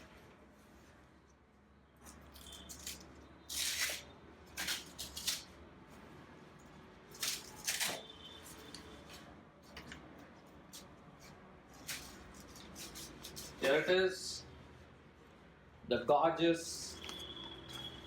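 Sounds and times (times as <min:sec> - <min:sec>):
plastic wrapping rustling: 0:02.1 - 0:05.6, 0:07.0 - 0:10.0, 0:10.7 - 0:13.8.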